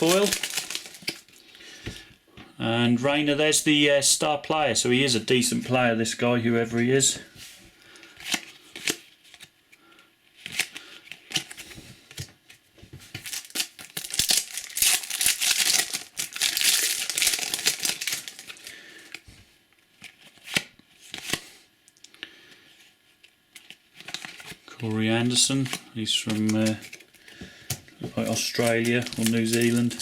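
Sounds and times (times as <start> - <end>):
cards clicking and rustling: 0.0 - 1.4, 25.3 - 30.0
wrapper tearing and crinkling: 0.0 - 1.4, 13.2 - 18.7, 26.2 - 27.2, 28.2 - 30.0.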